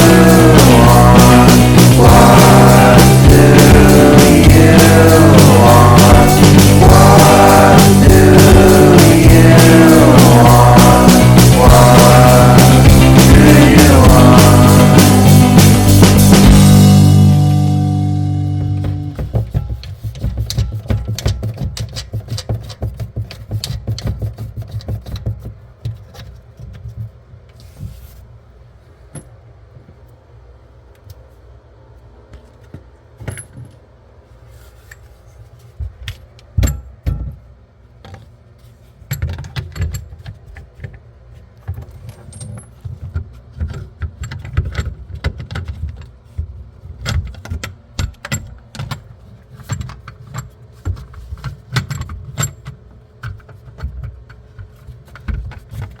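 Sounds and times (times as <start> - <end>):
low rumble: 0.0 - 19.2
handling knocks: 0.0 - 25.6.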